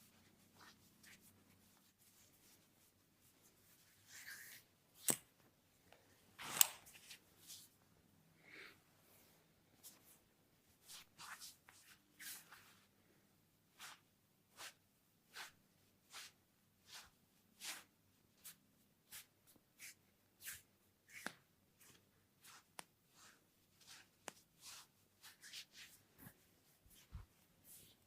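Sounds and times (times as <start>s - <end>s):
hands rubbing in massage: 10.8s - 12.9s, 13.7s - 28.0s.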